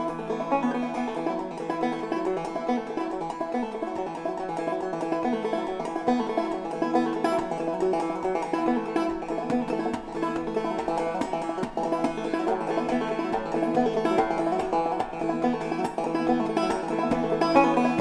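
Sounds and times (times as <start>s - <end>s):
fast-picked banjo: 0.0s - 18.0s.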